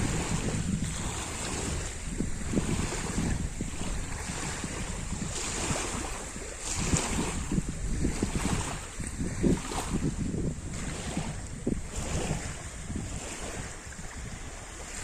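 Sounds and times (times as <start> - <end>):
lake water splashing: 0.0 - 15.0
wind rumbling on microphone: 0.0 - 15.0.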